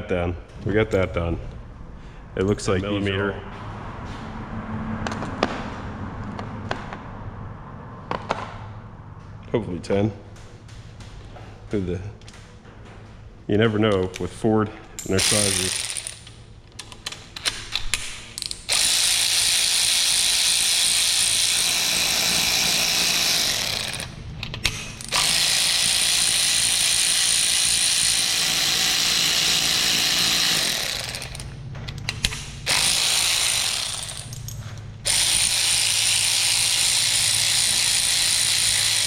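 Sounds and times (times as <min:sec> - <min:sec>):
power ratchet spinning bolts: 0:15.0 - 0:16.4, 0:17.4 - 0:39.0
ratchet clicks: 0:15.0 - 0:39.0.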